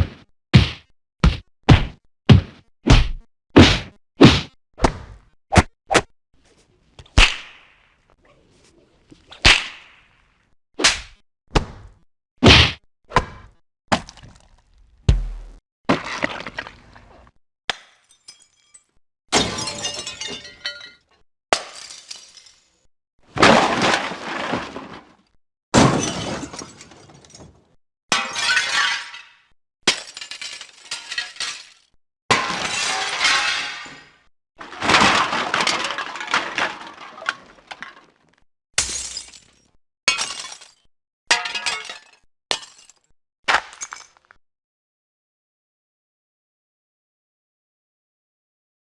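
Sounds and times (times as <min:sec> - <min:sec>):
crashing and shattering glass: 0:18.0 - 0:22.8, 0:28.1 - 0:38.2, 0:38.8 - 0:43.1.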